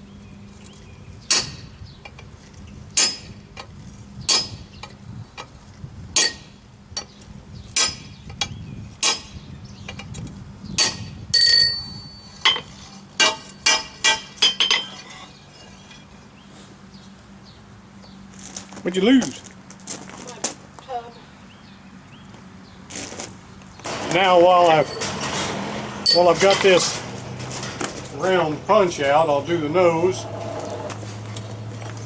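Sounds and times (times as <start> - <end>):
hammer striking punch on steel: 7.8 - 8.1, 13.2 - 14.8.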